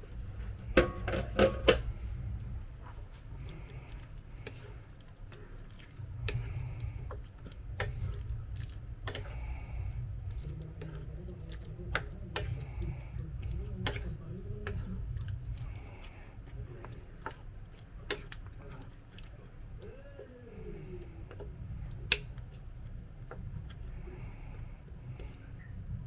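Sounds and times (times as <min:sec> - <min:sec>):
low steady hum: 0:00.0 - 0:26.0
utensil clinking against pot: 0:00.7 - 0:01.9, 0:09.0 - 0:09.7, 0:10.4 - 0:15.0, 0:18.0 - 0:18.9.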